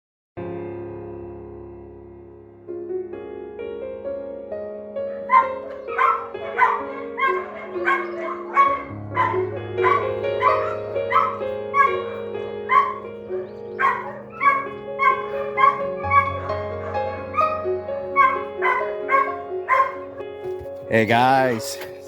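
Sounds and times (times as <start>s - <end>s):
piano music: 0.4s - 22.0s
dog barking: 5.1s - 20.5s.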